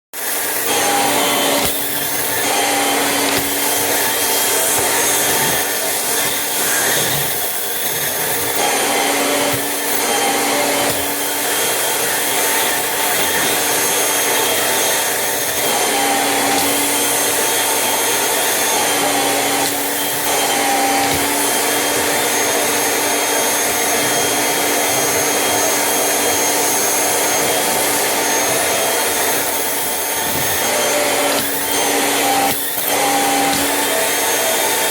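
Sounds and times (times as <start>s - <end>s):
vacuum cleaner running: 0.2s - 34.9s.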